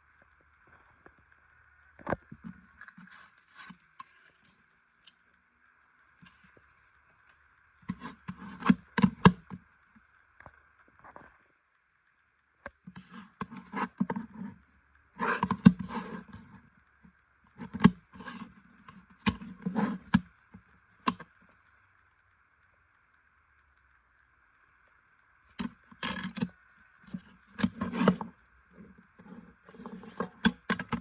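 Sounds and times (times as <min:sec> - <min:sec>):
faint steady hiss: 0:00.0 - 0:31.0
cd packaging rustling and scraping: 0:02.0 - 0:05.2, 0:06.2 - 0:09.6, 0:12.9 - 0:14.6, 0:15.2 - 0:16.6, 0:17.5 - 0:20.3, 0:25.5 - 0:31.0.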